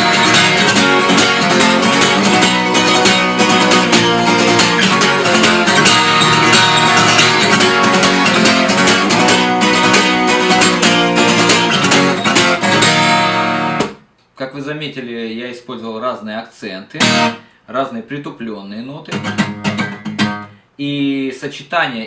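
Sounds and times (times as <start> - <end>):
guitar strummed fast: 0.0 - 14.0, 17.0 - 17.5, 19.1 - 20.6.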